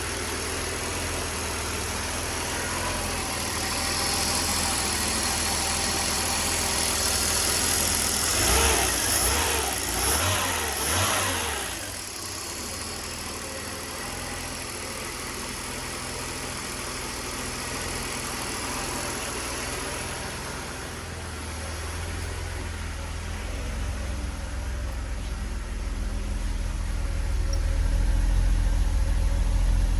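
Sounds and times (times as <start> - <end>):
car engine running with stumble: 0.0 - 29.9
engine revving: 2.2 - 13.2.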